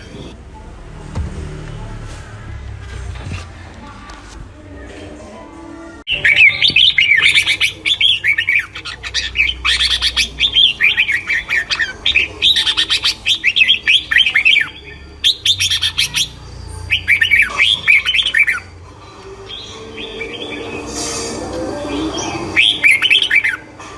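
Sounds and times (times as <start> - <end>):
songbird twittering chirps: 6.1 - 23.8.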